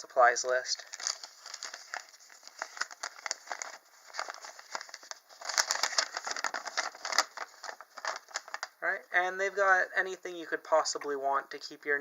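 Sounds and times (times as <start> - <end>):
paper rustling and crinkling: 0.8 - 8.8.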